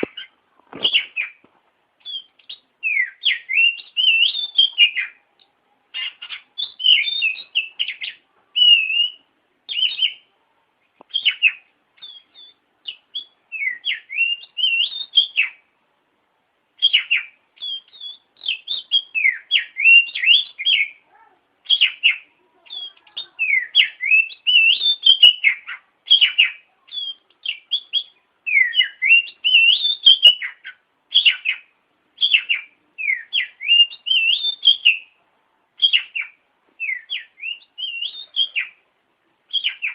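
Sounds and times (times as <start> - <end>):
bird chattering: 0.0 - 1.4, 2.0 - 10.3, 11.1 - 15.6, 16.8 - 35.2, 35.8 - 38.8, 39.5 - 39.9
bird singing whistled phrases: 2.0 - 5.2, 5.9 - 10.3, 11.1 - 15.6, 16.8 - 21.0, 21.6 - 35.2, 35.8 - 38.8, 39.5 - 39.9.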